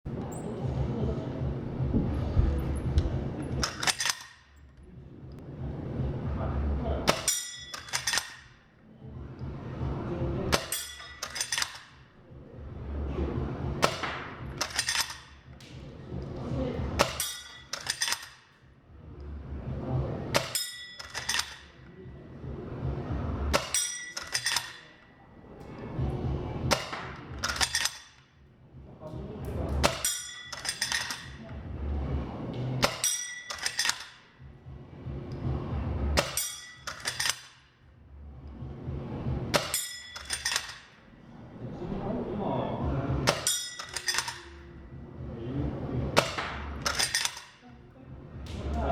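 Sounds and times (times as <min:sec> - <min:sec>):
metallic ring of steel target: 0:07.0 - 0:08.6, 0:10.5 - 0:12.0, 0:17.0 - 0:18.4, 0:20.3 - 0:21.8, 0:23.5 - 0:25.0, 0:29.8 - 0:31.4, 0:32.8 - 0:34.3, 0:36.2 - 0:37.6, 0:39.5 - 0:41.0, 0:43.2 - 0:44.7.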